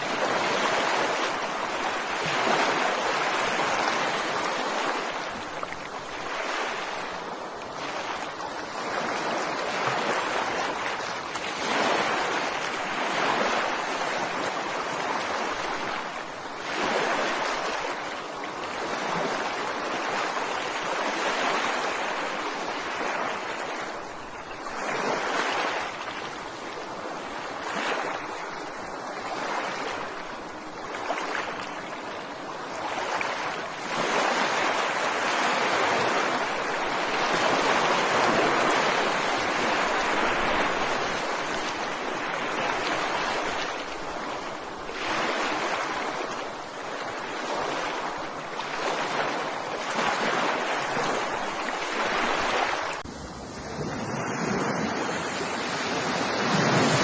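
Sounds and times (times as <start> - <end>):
ocean waves breaking on beach: 0.0 - 57.0.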